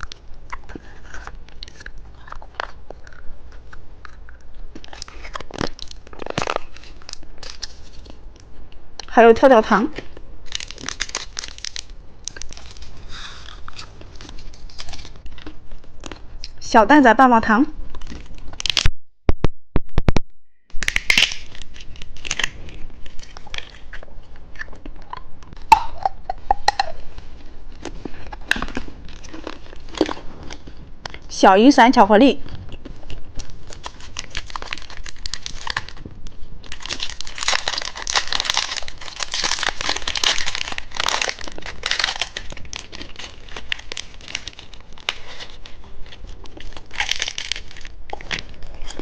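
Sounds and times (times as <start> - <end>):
plastic candy wrapper crackling: 0.0 - 16.6, 17.9 - 18.9, 20.7 - 27.1, 27.7 - 31.4, 32.7 - 49.0
plastic packaging rustling: 4.8 - 8.2, 10.0 - 16.2, 17.8 - 18.9, 20.7 - 24.3, 25.5 - 31.2, 32.5 - 49.0.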